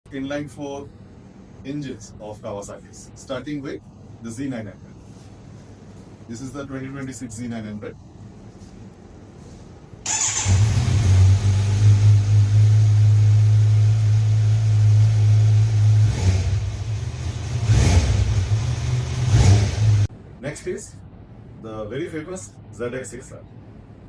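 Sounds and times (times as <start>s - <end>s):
engine throttle blips: 10.0s - 20.1s.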